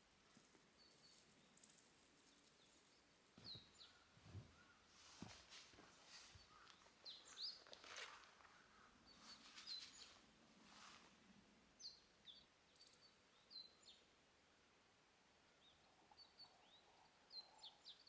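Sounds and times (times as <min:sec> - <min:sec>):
soft rustling: 0:00.2 - 0:11.4
bird chirping: 0:00.8 - 0:04.8, 0:06.1 - 0:10.2, 0:11.8 - 0:14.1, 0:15.6 - 0:18.0.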